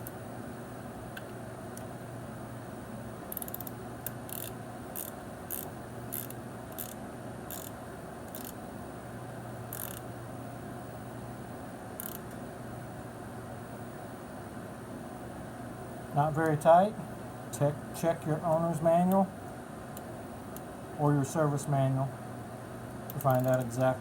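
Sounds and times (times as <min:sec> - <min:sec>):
ratchet wrench clicking: 0:03.3 - 0:07.7, 0:08.3 - 0:08.6, 0:09.7 - 0:10.0, 0:12.0 - 0:12.2, 0:23.1 - 0:23.6.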